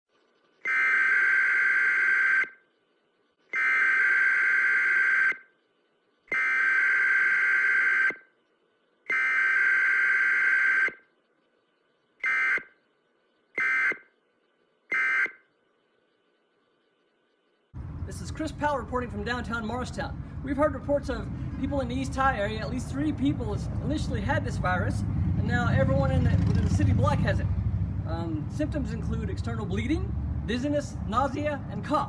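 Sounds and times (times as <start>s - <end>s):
electronic alarm buzzer: 0.6s - 2.6s, 3.5s - 5.5s, 6.3s - 8.3s, 12.2s - 12.8s, 13.6s - 14.1s, 14.9s - 15.5s.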